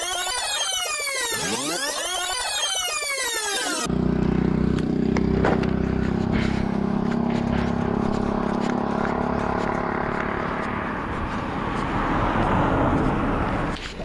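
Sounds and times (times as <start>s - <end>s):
electronic music: 0.0s - 3.9s
boat motor running: 1.2s - 13.7s.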